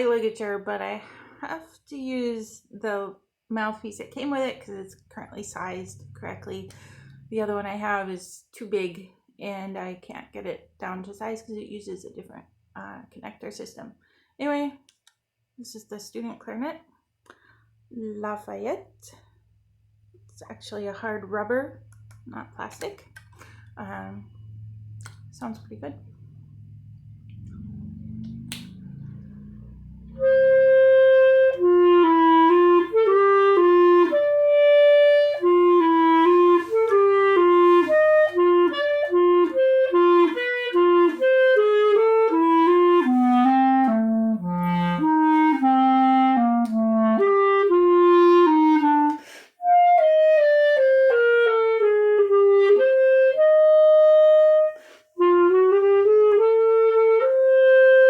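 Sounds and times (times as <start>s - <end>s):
clarinet playing quick notes: 30.2s - 58.0s.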